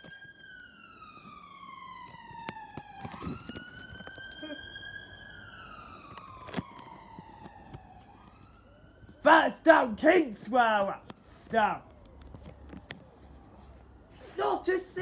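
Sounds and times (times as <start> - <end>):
police siren wailing: 0.0 - 15.0.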